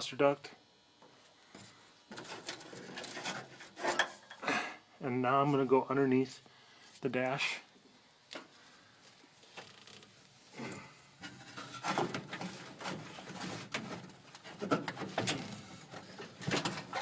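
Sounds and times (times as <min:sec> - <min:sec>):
rustling and rubbing: 0:11.3 - 0:15.2.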